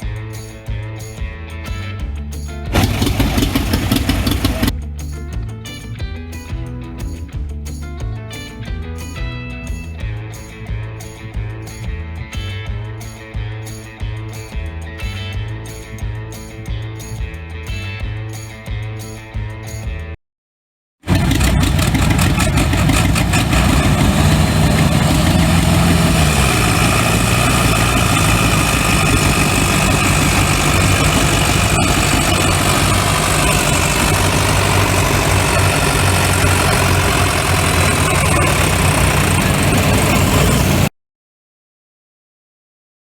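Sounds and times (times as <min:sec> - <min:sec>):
tractor engine running: 0:02.7 - 0:04.9, 0:21.1 - 0:40.9.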